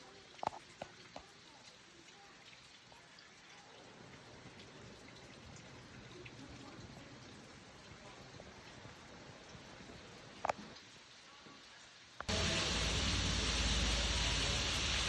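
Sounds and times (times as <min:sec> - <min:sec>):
distant waterfall rushing: 0:12.3 - 0:15.0.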